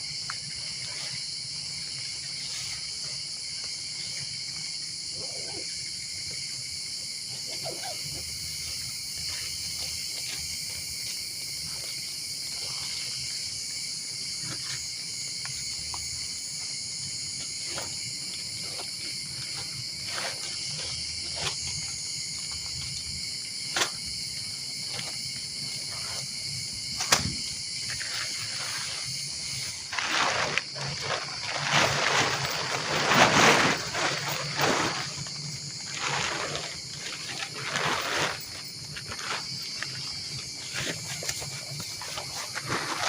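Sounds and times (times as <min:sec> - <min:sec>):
insects chirring: 0:00.0 - 0:43.0.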